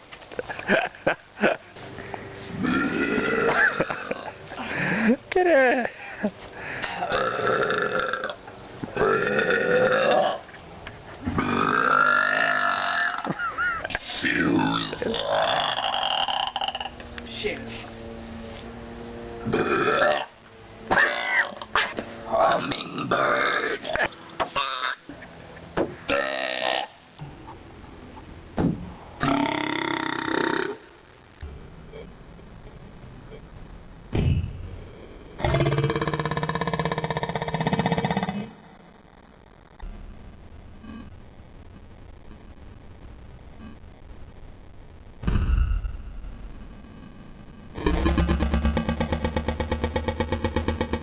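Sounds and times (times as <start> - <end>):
girl burping: 2.6 - 4.4, 7.0 - 8.3
person burping: 2.6 - 10.4, 11.3 - 17.0, 19.5 - 20.3, 26.1 - 27.0, 29.2 - 30.9, 35.4 - 38.6.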